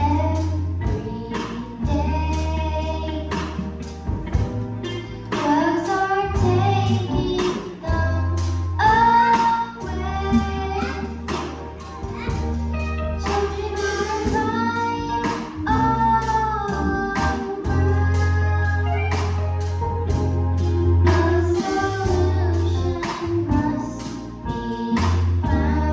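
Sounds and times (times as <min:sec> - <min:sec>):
bass line: 0:00.0 - 0:25.9
drum beat: 0:11.3 - 0:14.5
children's choir singing: 0:13.2 - 0:18.6.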